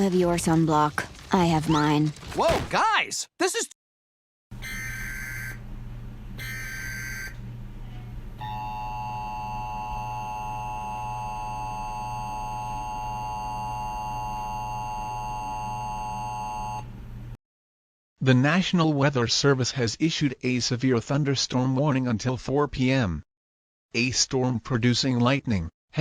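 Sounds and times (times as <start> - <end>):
two-tone attention signal: 4.6 - 5.6, 6.4 - 7.4, 8.4 - 16.9.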